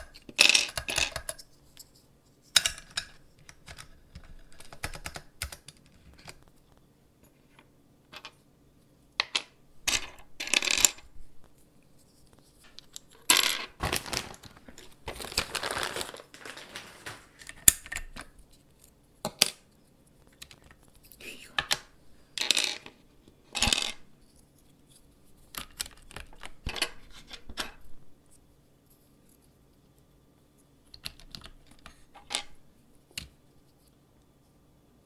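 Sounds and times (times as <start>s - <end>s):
keyboard parts clicking and clattering: 0.0s - 1.8s, 2.5s - 6.7s, 9.2s - 11.6s, 12.3s - 18.7s, 21.6s - 24.1s, 30.9s - 32.6s.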